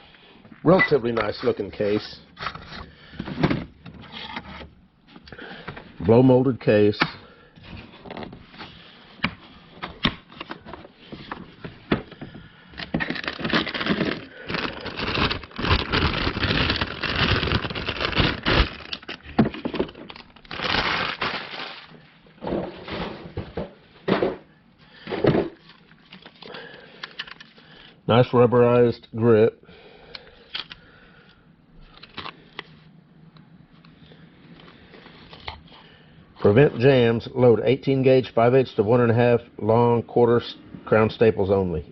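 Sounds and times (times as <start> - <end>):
plastic tool case being handled: 7.6 - 24.4.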